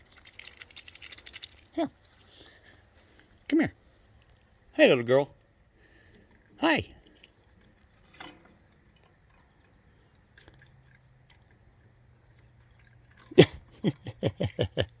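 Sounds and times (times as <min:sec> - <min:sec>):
insects chirring: 0:00.0 - 0:15.0
woman laughing: 0:13.3 - 0:15.0.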